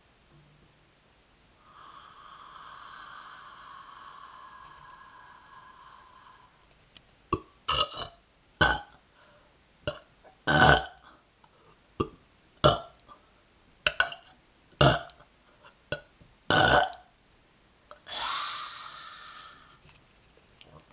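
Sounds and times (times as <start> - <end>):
person burping: 7.4 - 9.0, 9.9 - 11.0, 12.0 - 13.0, 14.8 - 15.2, 15.9 - 17.0.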